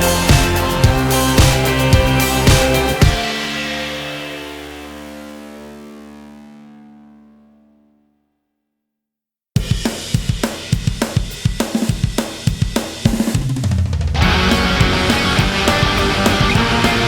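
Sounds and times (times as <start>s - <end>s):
rock drum beat: 0.0s - 4.6s, 9.6s - 17.0s
rock band with guitars: 0.0s - 5.5s, 14.0s - 17.0s
bass guitar: 0.0s - 5.9s, 14.1s - 17.0s.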